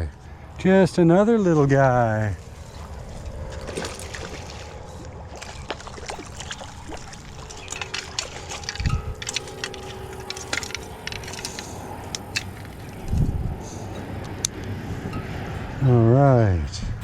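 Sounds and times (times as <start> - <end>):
water splashing and sloshing: 2.3 - 15.8
fishing tackle clicks and rattles: 5.4 - 14.7.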